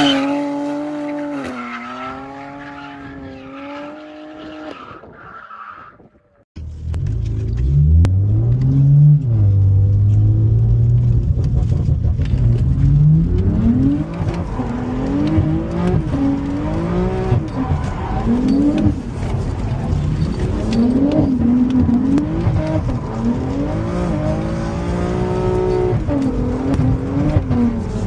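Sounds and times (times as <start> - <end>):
car engine revving: 6.8 - 28.0.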